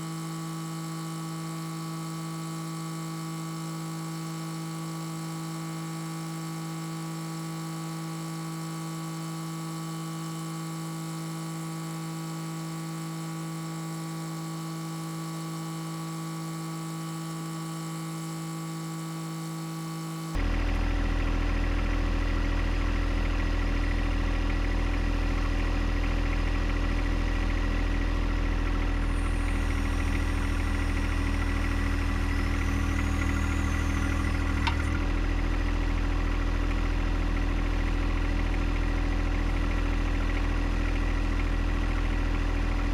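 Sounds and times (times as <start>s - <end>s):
tractor diesel engine running: 20.4s - 42.9s
steady hum: 28.4s - 35.5s.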